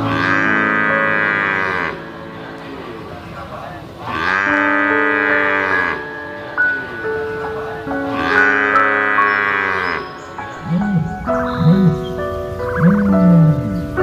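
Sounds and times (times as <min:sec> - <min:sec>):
cow mooing: 0:00.0 - 0:02.9, 0:04.1 - 0:06.1, 0:07.5 - 0:12.0
background music with sustained notes: 0:00.0 - 0:14.0.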